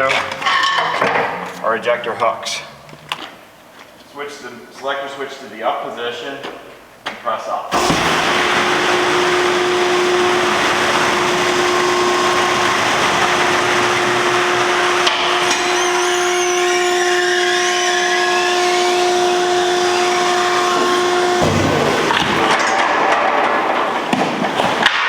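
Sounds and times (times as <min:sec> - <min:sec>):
high squeaks: 0:07.7 - 0:22.5
hydraulic power unit whining: 0:07.7 - 0:24.1.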